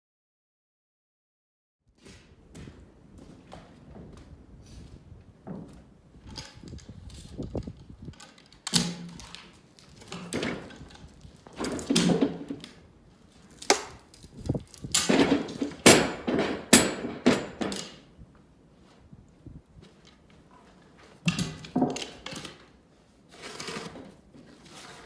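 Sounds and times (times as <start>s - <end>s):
wood scraping: 13.5s - 14.8s, 23.3s - 25.0s
wooden knocks and thuds: 13.7s - 14.1s.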